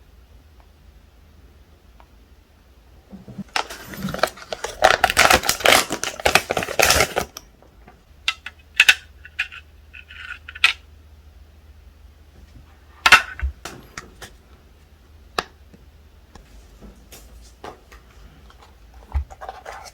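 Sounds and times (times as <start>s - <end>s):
plastic packaging crinkling: 3.4s - 7.5s.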